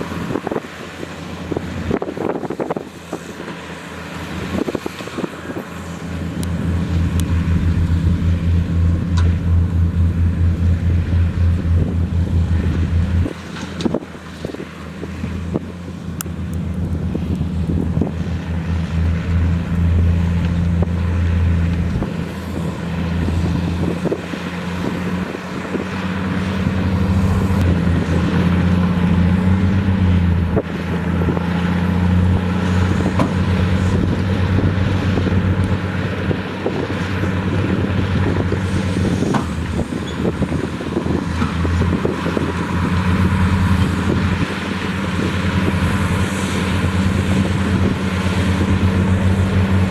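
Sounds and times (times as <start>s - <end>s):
heavy diesel engine running: 0.0s - 49.9s.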